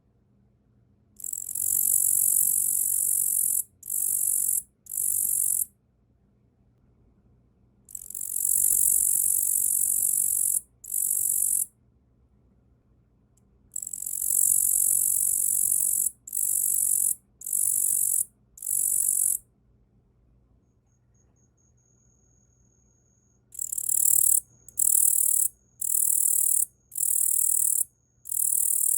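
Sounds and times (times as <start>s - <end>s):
katydid buzzing trill: 1.2s - 5.6s, 7.9s - 11.7s, 13.8s - 19.4s, 23.6s - 28.9s.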